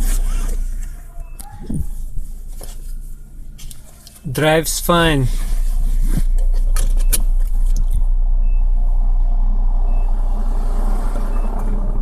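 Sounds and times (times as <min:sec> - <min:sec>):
car engine running: 0:00.0 - 0:12.0
high-pitched beep: 0:01.2 - 0:01.9.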